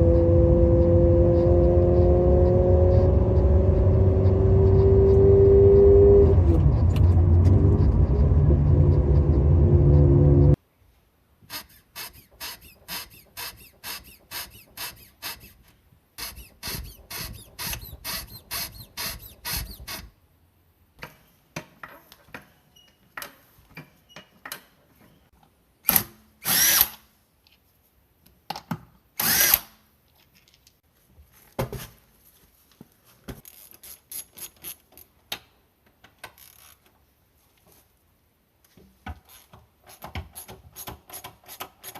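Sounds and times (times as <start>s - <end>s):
power tool pulsing: 11.5s - 20.0s.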